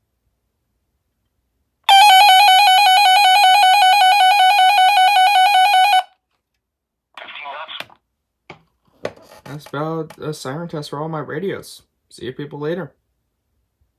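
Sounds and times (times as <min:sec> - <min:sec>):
electronic siren fast warble: 0:01.9 - 0:06.1.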